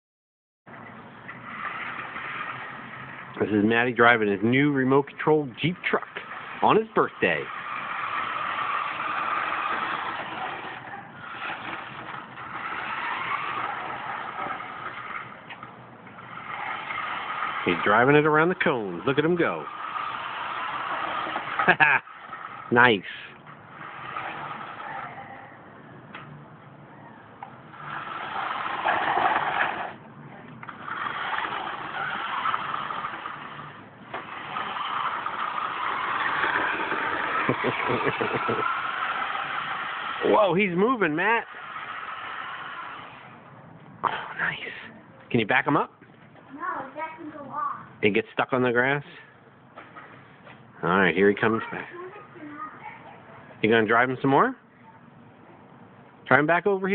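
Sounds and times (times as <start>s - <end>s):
toy truck electric motor whirring: 1.2s - 25.7s, 27.6s - 30.0s, 30.6s - 43.5s.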